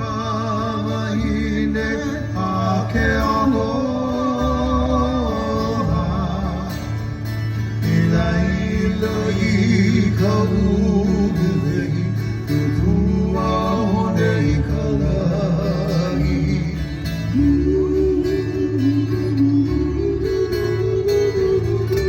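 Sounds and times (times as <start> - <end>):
live band with acoustic guitars: 0.0 - 22.0.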